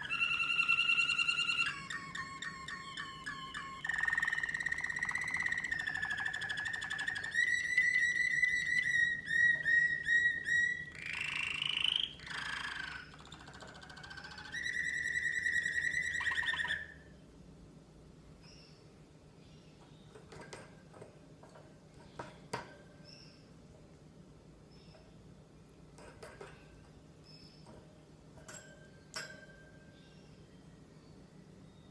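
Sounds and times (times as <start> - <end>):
canary singing trills: 0.0 - 17.2, 18.4 - 23.6.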